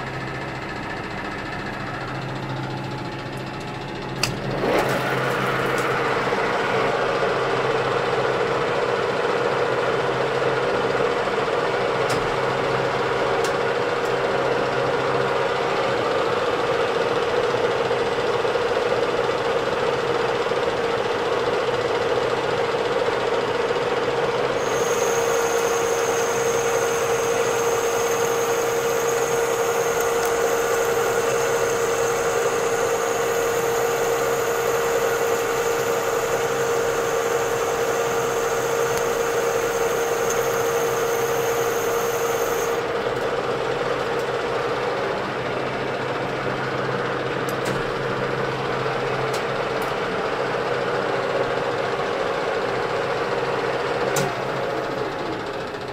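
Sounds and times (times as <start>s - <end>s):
lathe motor hum: 0.0s - 19.0s, 19.9s - 47.5s
thin high-pitched whine: 24.6s - 42.8s.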